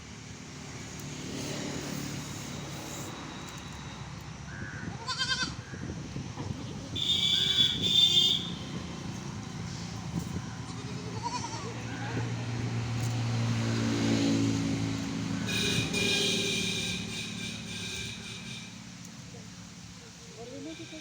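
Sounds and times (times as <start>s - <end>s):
low engine hum: 0.0s - 21.0s
goat kid bleating: 4.9s - 5.6s, 10.7s - 11.8s.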